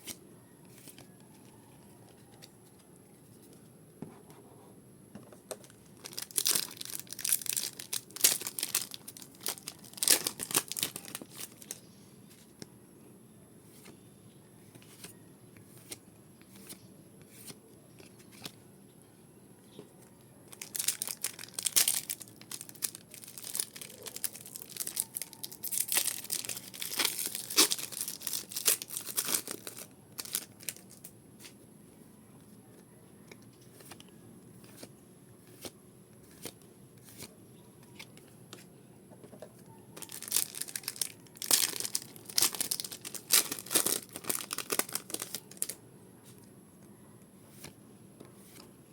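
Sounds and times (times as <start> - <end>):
card wrappers tearing and crinkling: 5.6 - 11.8, 20.5 - 31.1, 40.0 - 45.8.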